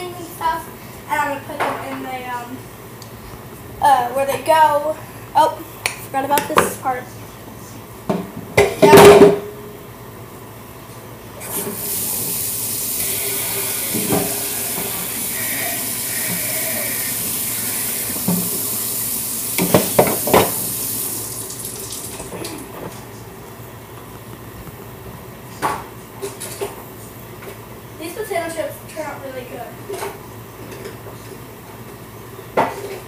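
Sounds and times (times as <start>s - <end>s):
tap running into sink: 11.5s - 22.3s.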